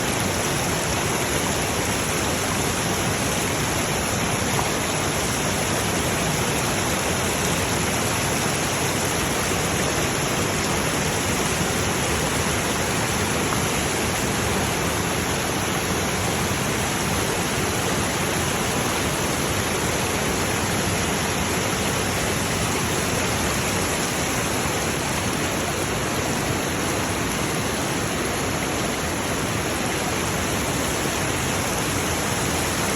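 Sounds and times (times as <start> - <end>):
waterfall roaring: 0.0 - 32.9.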